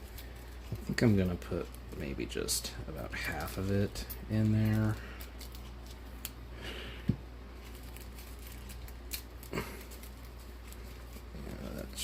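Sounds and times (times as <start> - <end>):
plastic bag rustling: 7.5 - 12.0.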